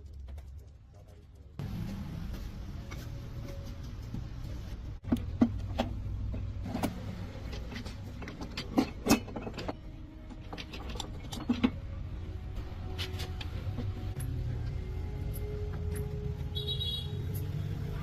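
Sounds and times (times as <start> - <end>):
metal tools clinking and knocking: 7.6 - 11.9.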